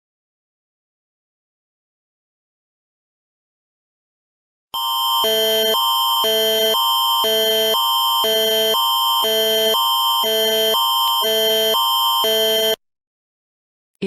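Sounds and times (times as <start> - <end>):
steady high tone: 4.8 - 12.8
alternating alert chords: 5.2 - 12.8.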